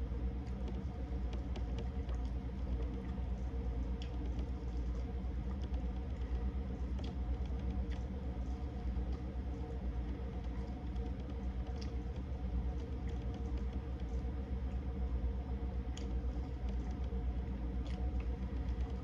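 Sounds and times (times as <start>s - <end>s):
steady low hum: 0.0s - 19.0s
chewing and shell cracking: 17.8s - 19.0s.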